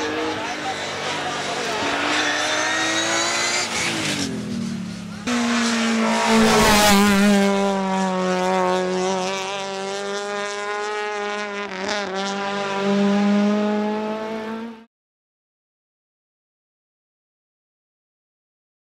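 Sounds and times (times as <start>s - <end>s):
car engine at high revs: 0.0s - 14.9s.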